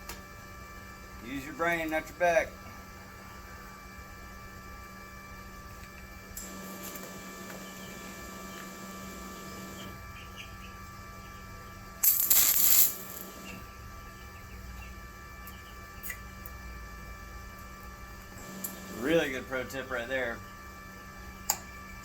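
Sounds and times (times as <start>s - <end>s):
steady electrical hum: 0.0s - 22.0s
welding arc crackle: 12.0s - 13.6s.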